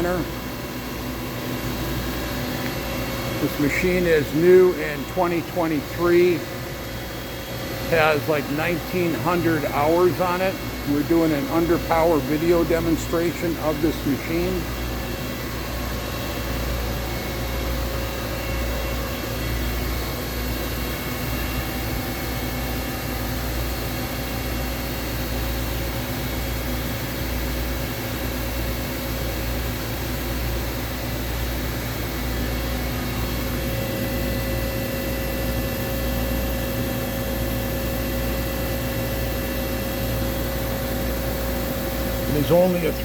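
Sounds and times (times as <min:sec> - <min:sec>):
machining center hum and whine: 0:00.0 - 0:43.0.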